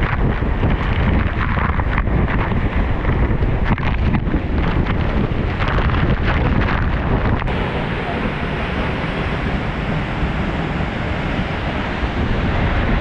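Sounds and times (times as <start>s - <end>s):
wind buffeting microphone: 0.0s - 13.0s
waterfall rushing: 7.5s - 13.0s.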